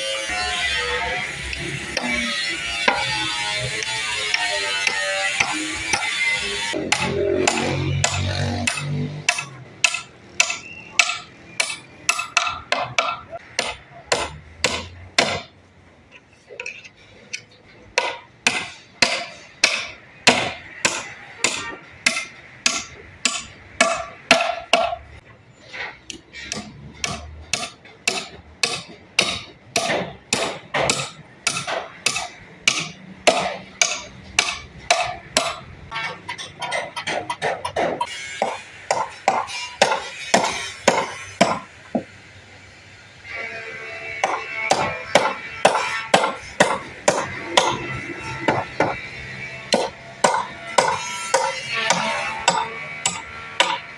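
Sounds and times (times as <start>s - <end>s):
hammering on wood: 6.8s - 15.5s, 18.0s - 25.0s, 26.5s - 35.6s, 36.6s - 42.1s, 44.2s - 47.9s, 48.5s - 49.0s, 49.7s - 53.8s.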